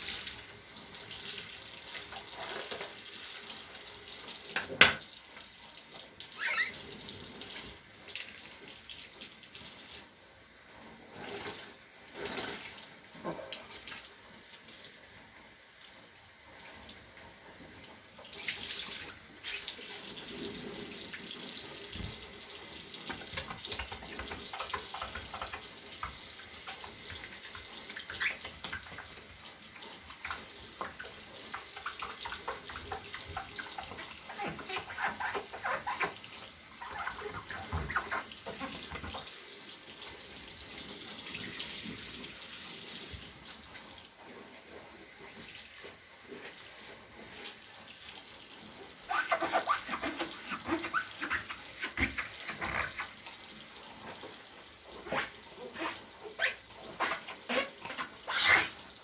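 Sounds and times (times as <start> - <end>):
tap water running into sink: 0.0 - 59.0
short squeaks: 6.4 - 6.9.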